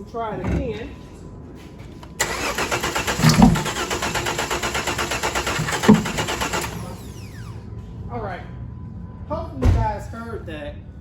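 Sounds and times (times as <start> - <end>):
car starter cranking: 2.0 - 7.6.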